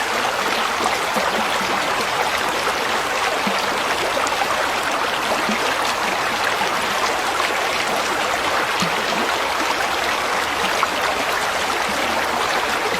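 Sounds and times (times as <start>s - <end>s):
water rushing: 0.0s - 12.9s.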